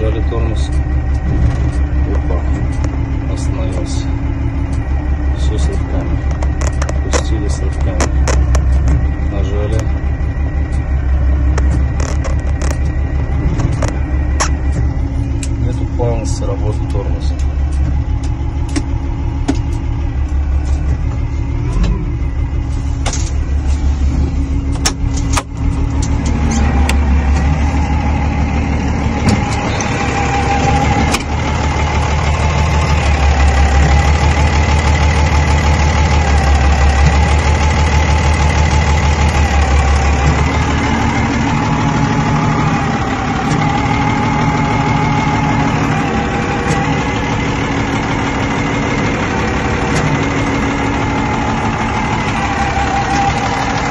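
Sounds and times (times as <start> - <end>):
forklift diesel engine running: 0.0 - 53.9
sharp engine knocks: 0.6 - 4.0, 4.6 - 10.0, 10.7 - 15.6, 16.2 - 22.2, 28.8 - 42.7, 43.4 - 52.5.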